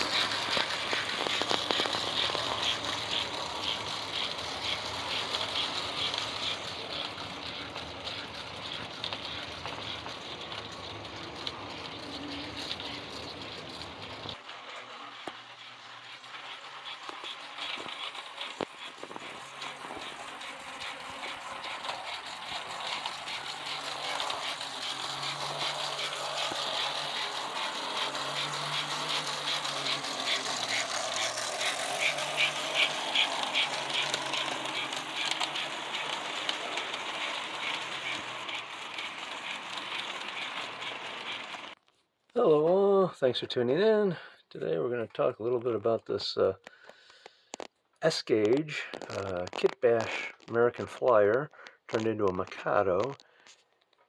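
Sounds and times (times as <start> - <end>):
model train motor whirring: 0.0 - 41.8, 47.3 - 53.6
rattling ticks: 0.0 - 41.8.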